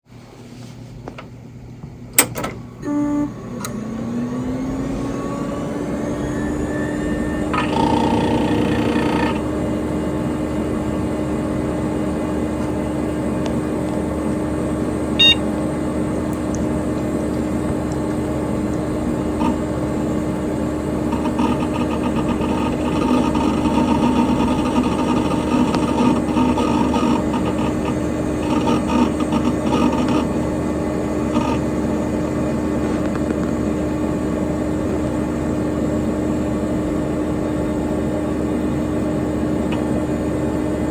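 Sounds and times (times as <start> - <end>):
cooling fan noise: 0.1 - 40.9
computer power click: 2.2 - 3.8
hard drive spinning up: 2.8 - 35.1, 35.8 - 40.9
hard drive seek ticking: 7.4 - 9.5, 18.7 - 30.6, 31.2 - 32.0.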